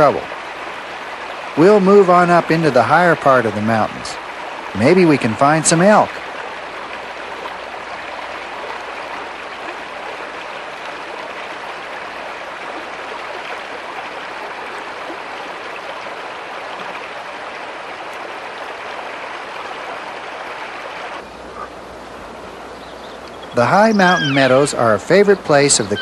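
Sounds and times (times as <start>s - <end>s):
stream water rushing: 0.0s - 26.0s.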